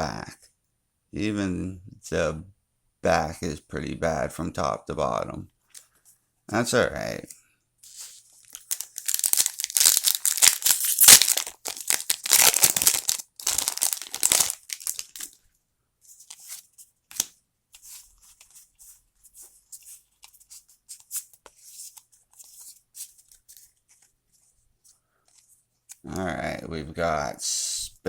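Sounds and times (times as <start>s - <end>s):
wrapper crinkling: 7.9s - 15.4s
wrapper being torn open: 8.4s - 15.4s.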